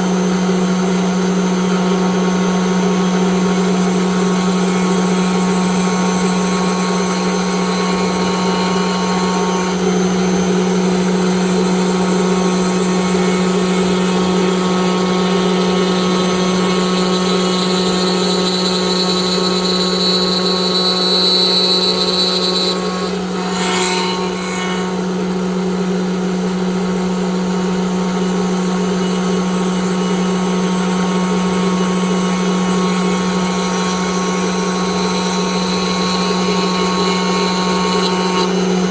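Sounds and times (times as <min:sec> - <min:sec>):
high machine whine: 0:00.0 - 0:23.5
cnc router machine drone: 0:00.0 - 0:38.9.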